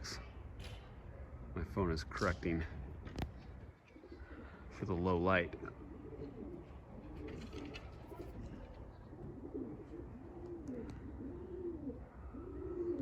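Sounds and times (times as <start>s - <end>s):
pigeons cooing: 3.9s - 4.8s, 5.5s - 13.0s.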